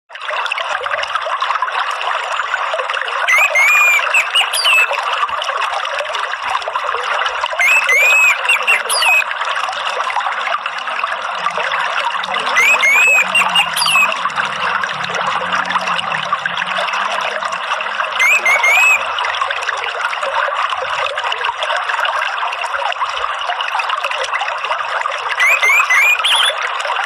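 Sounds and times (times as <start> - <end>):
trickling water: 0.1 - 27.0
thrush singing: 12.2 - 19.1.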